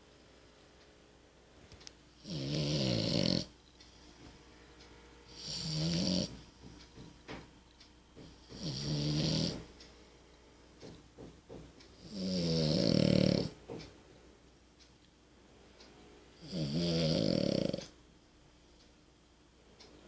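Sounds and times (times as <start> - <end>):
dog snoring: 2.2 - 3.5, 5.3 - 6.5, 8.2 - 9.7, 11.9 - 13.6, 16.4 - 17.9.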